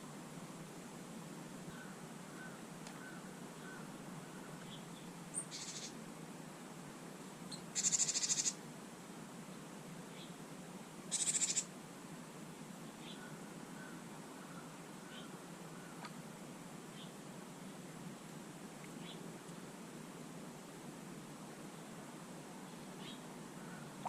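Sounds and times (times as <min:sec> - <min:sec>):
harsh pulsing bird calls: 0:01.7 - 0:06.0, 0:07.5 - 0:08.6, 0:11.1 - 0:11.7.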